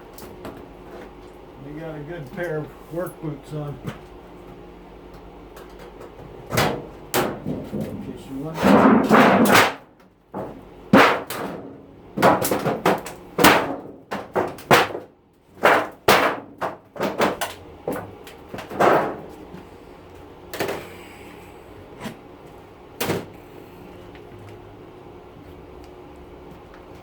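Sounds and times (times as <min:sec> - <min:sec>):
metal bangs and knocks: 0:06.0 - 0:19.4.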